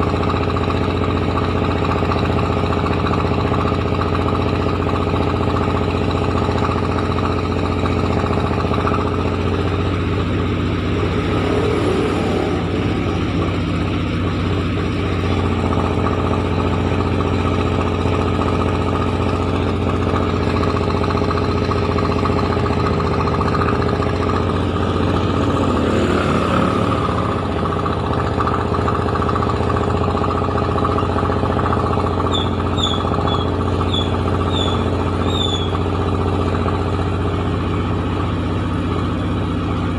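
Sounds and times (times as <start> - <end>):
milling machine humming: 0.0 - 37.8
short high chirps: 32.3 - 35.8.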